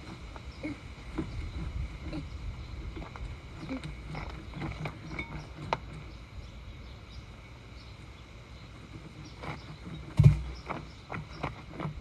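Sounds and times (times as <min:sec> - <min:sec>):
heavy metal clunk: 0:10.2 - 0:10.7.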